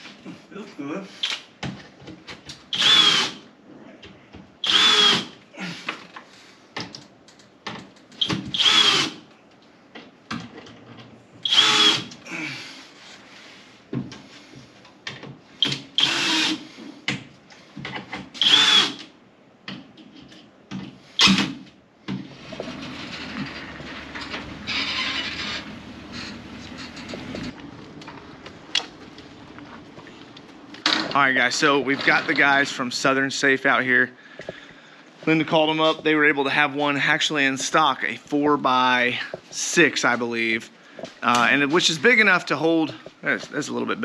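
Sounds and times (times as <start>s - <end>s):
screw gun whirring: 2.7s - 3.4s, 4.6s - 5.4s, 8.2s - 9.2s, 11.4s - 12.2s, 15.6s - 16.7s, 18.4s - 19.1s, 24.2s - 27.5s.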